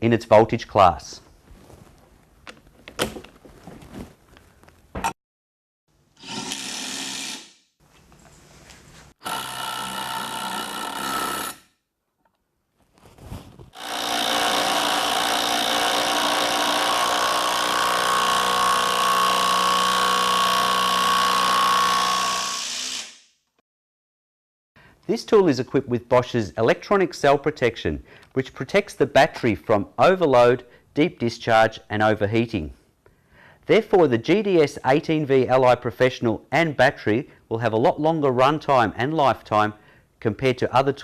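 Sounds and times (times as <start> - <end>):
cordless impact wrench running: 6.2 - 7.6, 9.2 - 11.6, 13.8 - 23.2.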